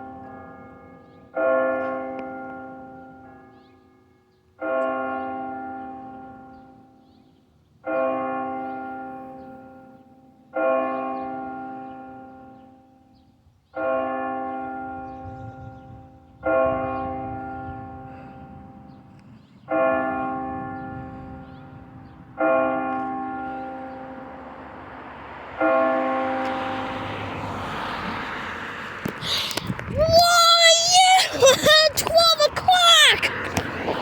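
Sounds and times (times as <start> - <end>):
church bell tolling: 0.0 - 27.5.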